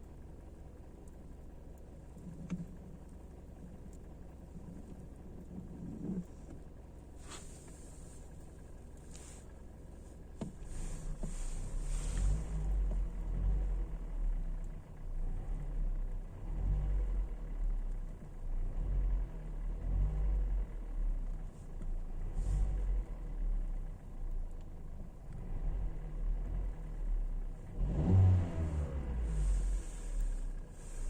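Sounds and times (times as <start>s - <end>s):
petrol engine rumbling: 0.0s - 15.1s.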